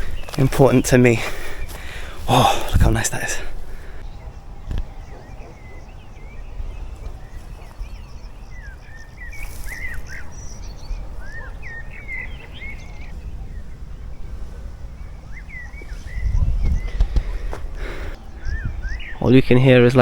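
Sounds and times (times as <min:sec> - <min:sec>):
steady low rumble: 0:00.0 - 0:19.6
small birds chirping: 0:00.0 - 0:20.0.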